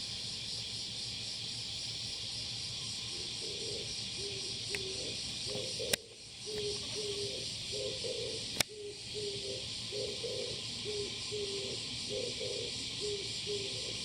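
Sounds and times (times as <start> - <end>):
high insect hiss: 0.0 - 14.0
dove cooing: 3.1 - 14.0.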